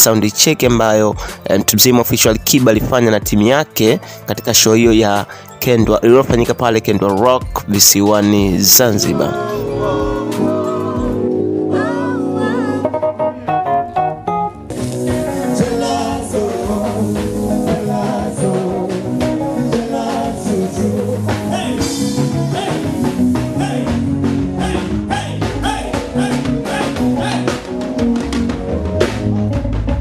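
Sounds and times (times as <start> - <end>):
drums playing a steady beat: 5.8 - 6.6, 15.0 - 30.0
person singing: 8.5 - 13.4, 15.0 - 27.6.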